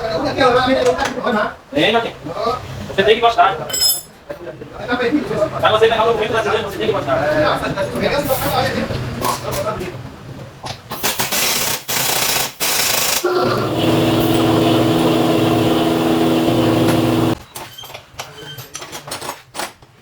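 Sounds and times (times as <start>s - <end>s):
pneumatic impact wrench: 10.9s - 17.4s.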